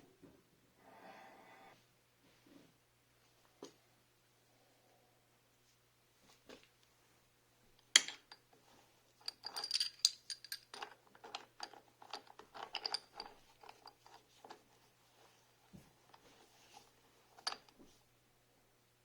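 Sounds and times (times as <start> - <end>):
small metal parts clinking: 9.2 - 14.2.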